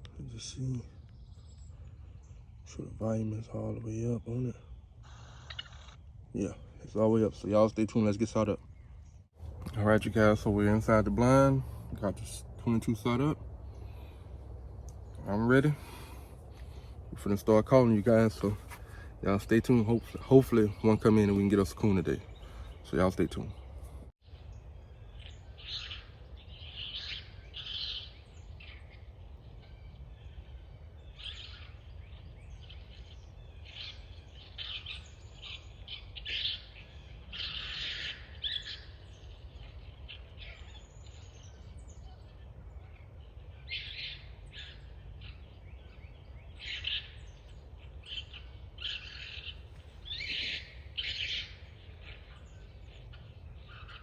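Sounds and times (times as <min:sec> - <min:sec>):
electronic animal call chirping: 0:05.0 - 0:06.0.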